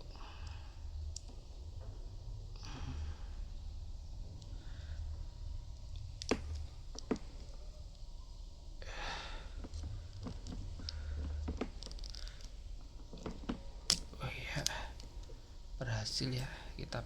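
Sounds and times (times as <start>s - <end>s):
crimping tool clicks: 13.9s - 15.1s.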